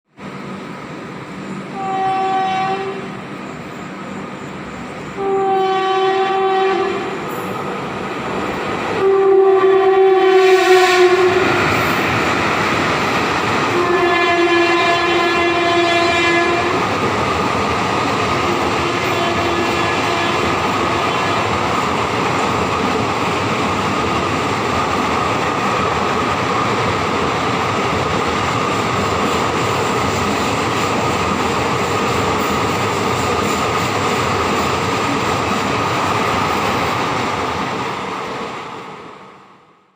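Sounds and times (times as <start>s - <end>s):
train rushing past: 0.1s - 39.9s
train horn blaring: 1.7s - 3.2s, 5.1s - 7.4s, 9.0s - 11.7s, 13.7s - 16.9s, 18.5s - 21.6s.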